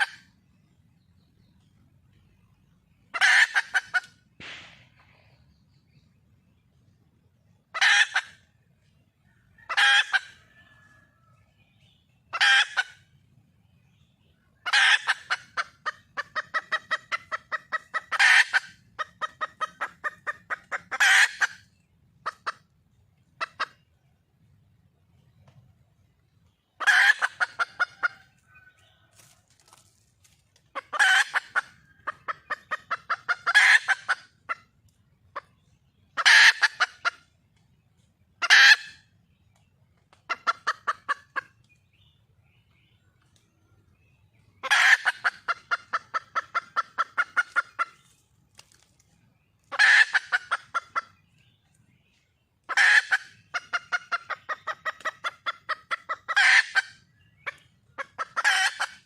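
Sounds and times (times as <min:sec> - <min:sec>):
rapid clucks: 0:01.4 - 0:06.5, 0:11.8 - 0:59.0
hen calling: 0:03.1 - 0:05.4, 0:52.7 - 0:59.0.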